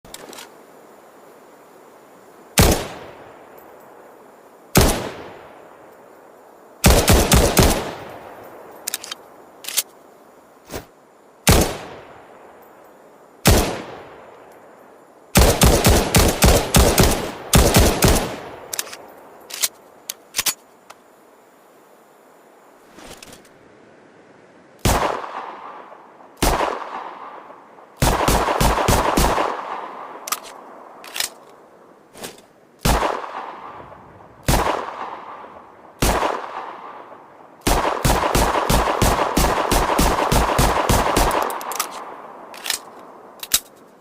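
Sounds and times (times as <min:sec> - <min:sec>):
faint clicks: 0:08.7 - 0:10.0, 0:18.6 - 0:21.0.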